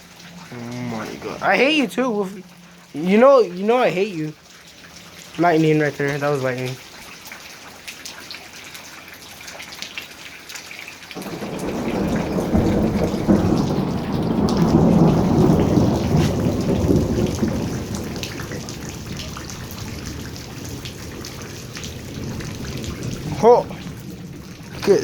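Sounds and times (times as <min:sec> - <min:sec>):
steady rain: 0:00.0 - 0:25.0
rolling thunder rumble: 0:11.2 - 0:25.0.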